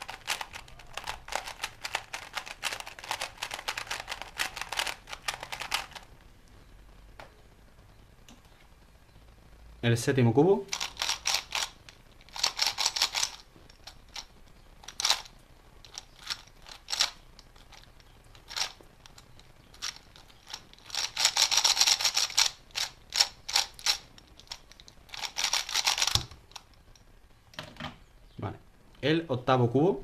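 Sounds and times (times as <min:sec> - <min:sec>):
puzzle cube layers clicking: 0:00.0 - 0:06.1, 0:10.7 - 0:15.3, 0:15.9 - 0:26.8.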